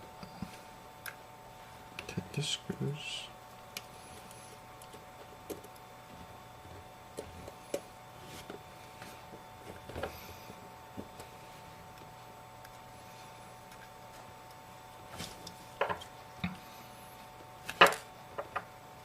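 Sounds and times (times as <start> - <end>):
faint steady hum: 0.0 - 19.0.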